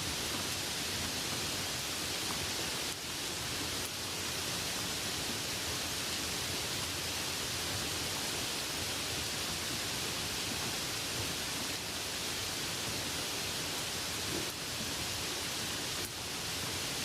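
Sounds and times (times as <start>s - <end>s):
light rain hissing: 0.0s - 17.0s.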